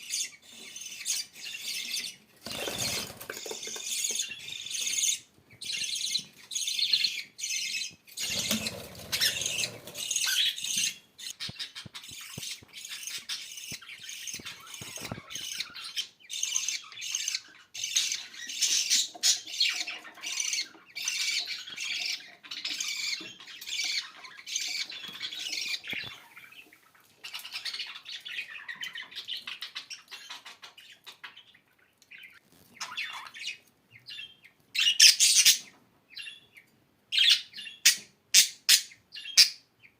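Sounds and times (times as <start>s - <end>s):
budgerigars chattering: 0.1s - 31.6s.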